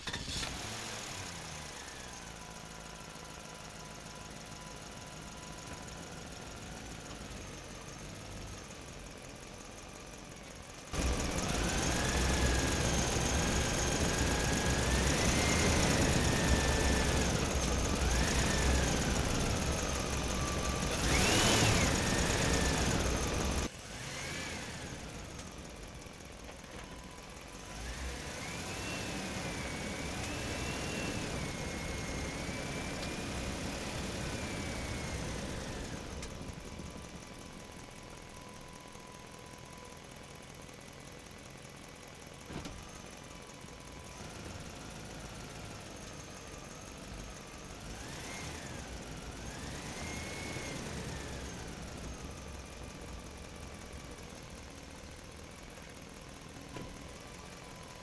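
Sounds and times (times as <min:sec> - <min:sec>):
electric motors whining: 0:11.0 - 0:25.6.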